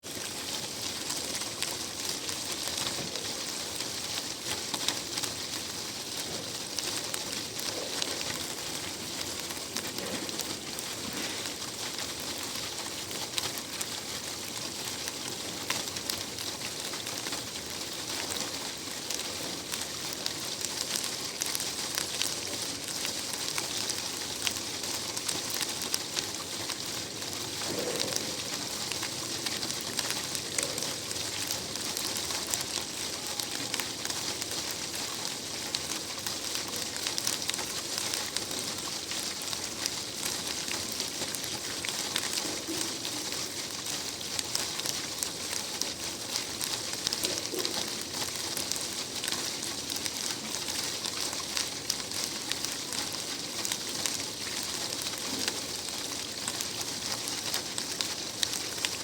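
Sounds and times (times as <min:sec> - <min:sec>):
steady rain: 0:00.0 - 0:59.0.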